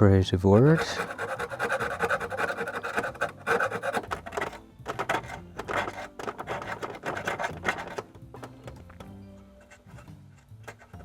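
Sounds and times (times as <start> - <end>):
cotton swab scrubbing metal: 0.5 - 8.6.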